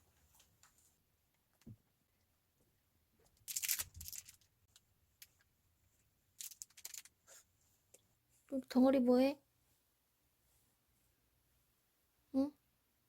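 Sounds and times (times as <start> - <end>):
material rustling and crinkling: 3.3 - 8.4.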